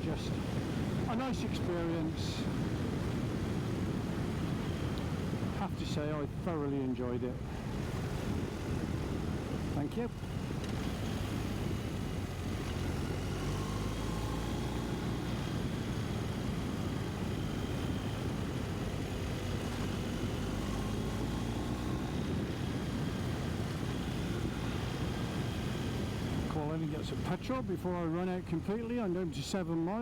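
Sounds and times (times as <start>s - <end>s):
wind noise: 0.0s - 27.7s
motorcycle engine running: 7.4s - 26.5s.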